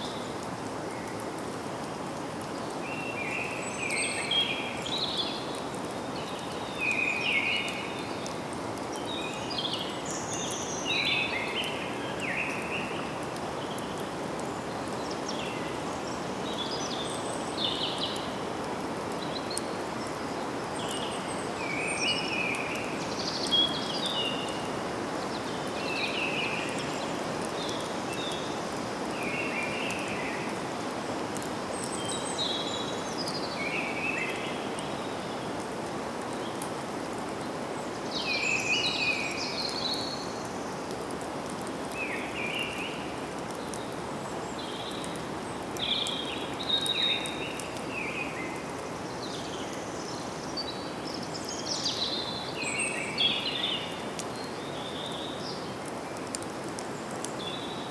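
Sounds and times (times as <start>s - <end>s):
steady background hiss: 0.0s - 57.9s
birds singing: 19.2s - 30.6s, 31.7s - 35.5s, 37.8s - 40.6s, 41.9s - 57.9s.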